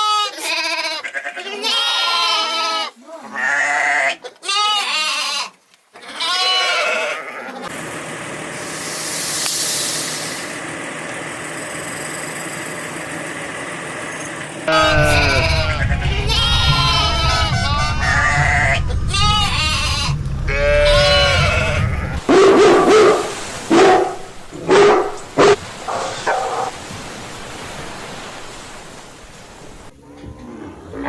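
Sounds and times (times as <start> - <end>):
goats bleating: 0.0 - 7.7, 14.7 - 22.2
low steady rumble: 14.7 - 25.6
dog barking: 22.3 - 26.7.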